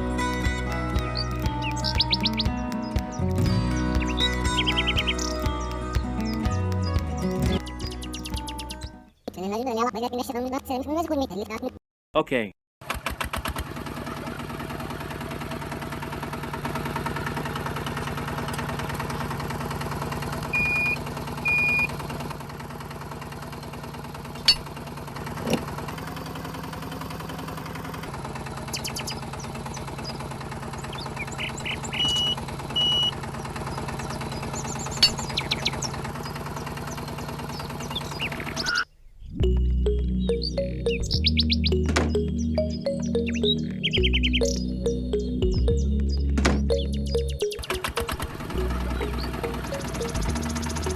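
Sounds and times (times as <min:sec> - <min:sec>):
sharp clicks: 0:00.3 - 0:03.1.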